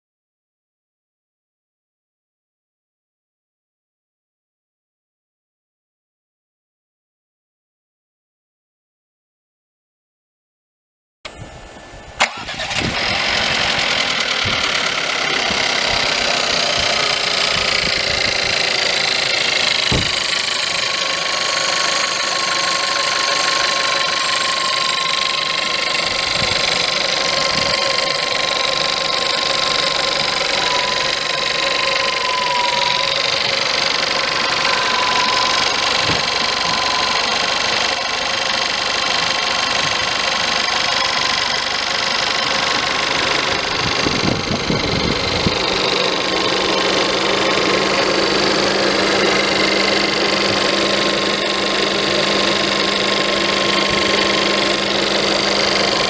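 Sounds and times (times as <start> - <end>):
car engine idling with rattle: 12.2 - 56.0.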